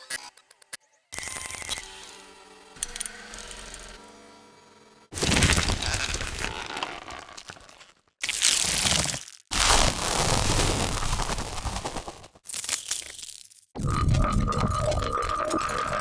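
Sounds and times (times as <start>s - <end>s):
cracking and crunching effects: 5.2s - 16.0s.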